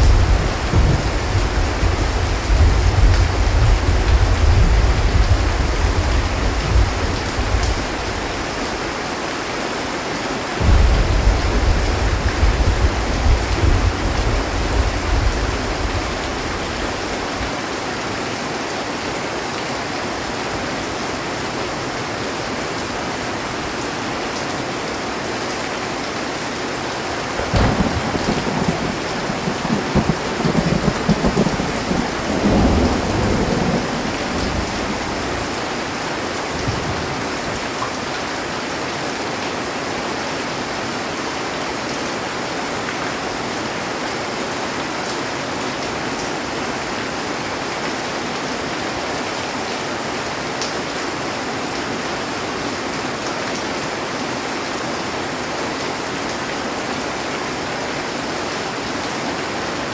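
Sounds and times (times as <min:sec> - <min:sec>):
thunder rumbling: 0:00.0 - 0:08.5, 0:10.6 - 0:17.5, 0:27.2 - 0:37.6
heavy rain on a metal roof: 0:00.0 - 0:59.9.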